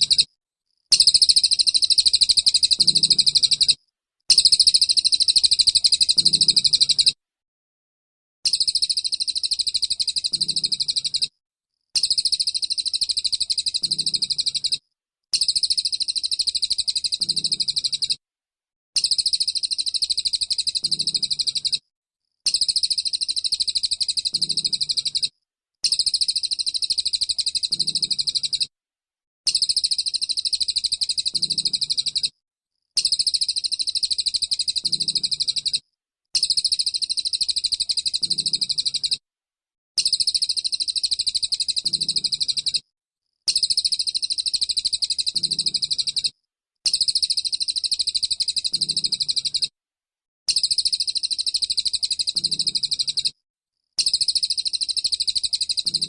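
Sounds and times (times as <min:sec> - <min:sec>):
songbird fast chattering song: 0:01.0 - 0:07.2, 0:36.4 - 0:39.2.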